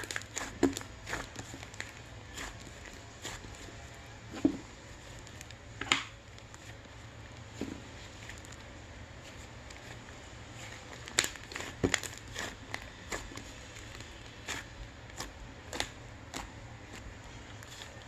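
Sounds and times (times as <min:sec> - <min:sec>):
shaving foam squished by hand: 0:00.0 - 0:04.1.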